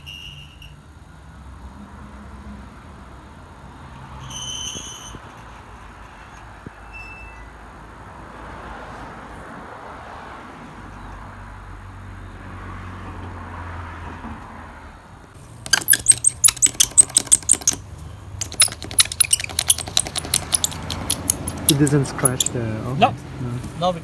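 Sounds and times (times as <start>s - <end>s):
razor blade scraping glass: 15.7s - 17.8s, 18.4s - 22.6s.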